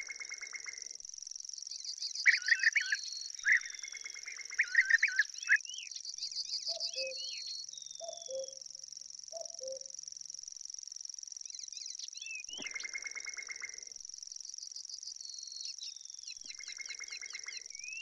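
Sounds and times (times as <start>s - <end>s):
birds chirping and trilling: 2.2s - 8.5s.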